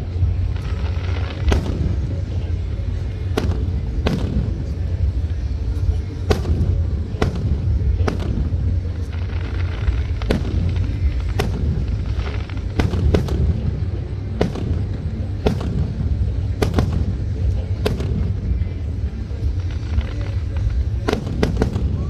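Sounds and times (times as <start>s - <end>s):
fireworks bangs: 0.0s - 22.0s
steady low rumble: 0.0s - 22.0s.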